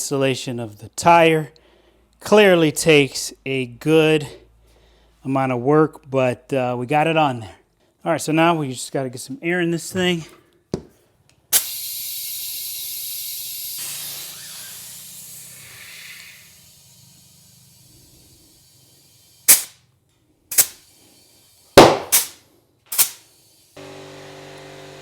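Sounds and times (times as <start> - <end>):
air hissing into tire: 11.5 - 19.9, 20.5 - 23.8
tire bead popping onto rim: 21.8 - 23.2.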